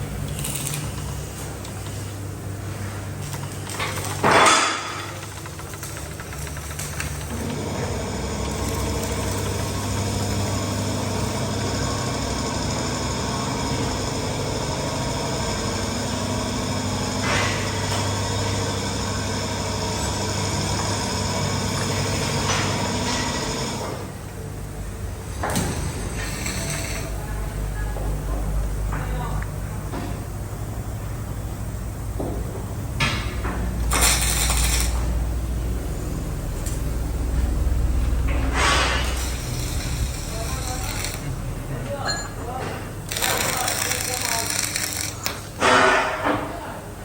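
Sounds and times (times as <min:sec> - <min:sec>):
machinery humming drone: 0:00.0 - 0:47.0.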